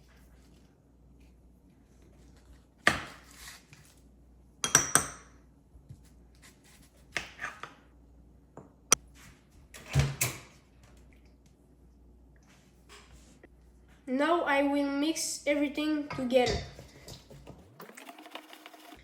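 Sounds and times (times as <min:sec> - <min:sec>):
kitchenware knocks and clinks: 0:04.6 - 0:05.3, 0:16.1 - 0:17.7.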